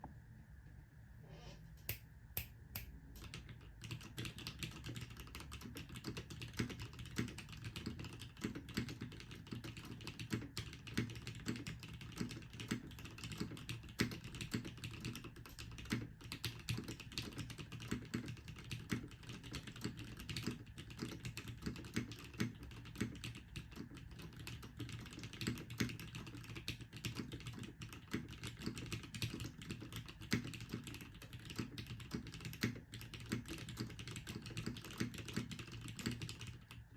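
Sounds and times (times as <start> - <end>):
mechanical keyboard typing: 3.2 - 36.8.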